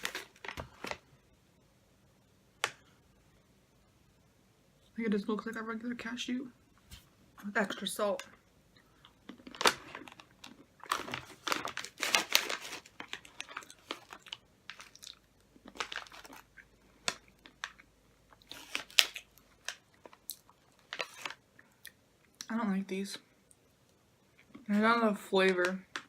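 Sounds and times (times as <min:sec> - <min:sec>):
plastic snack bag crinkling: 0:00.0 - 0:01.1, 0:09.0 - 0:21.9
nuts being crunched and chewed: 0:09.0 - 0:21.4.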